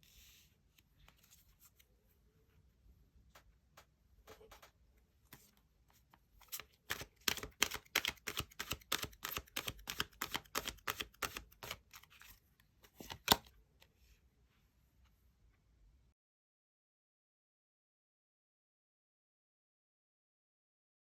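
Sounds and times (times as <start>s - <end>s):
cards being shuffled: 6.4s - 13.5s.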